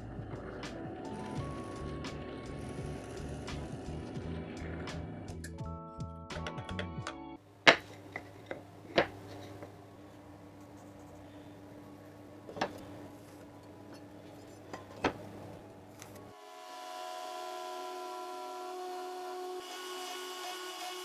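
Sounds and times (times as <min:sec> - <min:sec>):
motor running: 0:00.0 - 0:05.4, 0:16.3 - 0:21.0
faint steady hum: 0:07.4 - 0:20.9.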